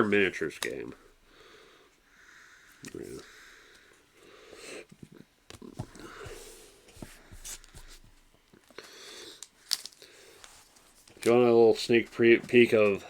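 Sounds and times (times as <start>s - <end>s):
cards rustling and sliding: 4.9s - 13.0s.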